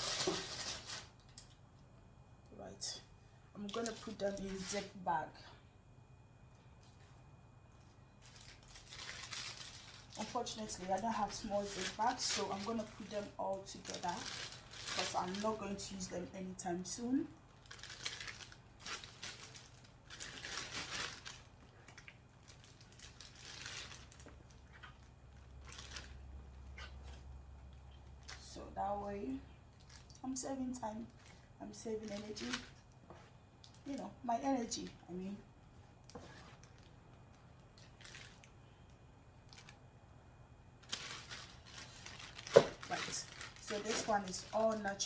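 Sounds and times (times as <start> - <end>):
plastic zip bag crinkling: 0.0 - 1.4, 8.2 - 16.1, 17.5 - 27.2, 29.8 - 30.2, 32.0 - 32.9, 36.2 - 38.5, 40.8 - 45.0.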